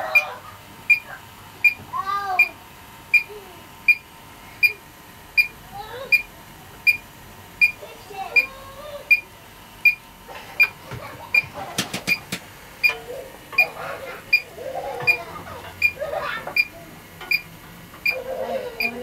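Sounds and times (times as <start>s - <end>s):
leak detector beeping: 0.1s - 0.3s, 0.9s - 1.8s, 2.4s - 3.3s, 3.9s - 4.8s, 5.4s - 7.0s, 7.6s - 7.8s, 8.4s - 10.0s, 10.6s - 11.5s, 12.8s - 13.0s, 14.3s - 16.0s, 17.3s - 18.2s.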